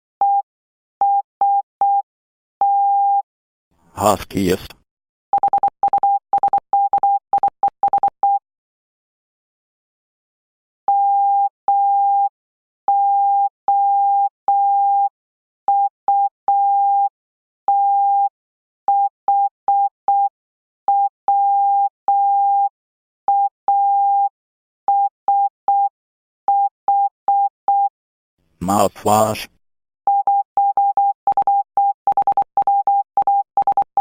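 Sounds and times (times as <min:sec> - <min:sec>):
morse code beeps: 0:05.4 - 0:08.4, 0:30.1 - 0:34.0.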